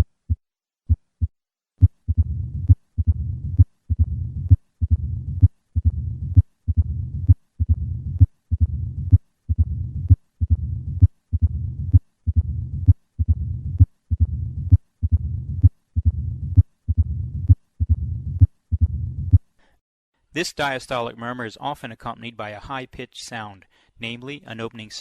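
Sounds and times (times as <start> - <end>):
heart sound clicks: 0.0 - 19.4
low rumbling heart murmur: 0.3 - 19.4.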